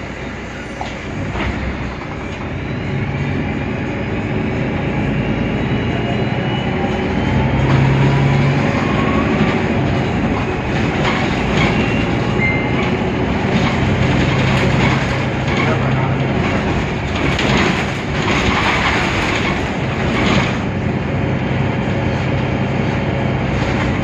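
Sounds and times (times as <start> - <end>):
bus engine rumbling: 0.0 - 24.0
rattles and knocks: 9.3 - 20.9.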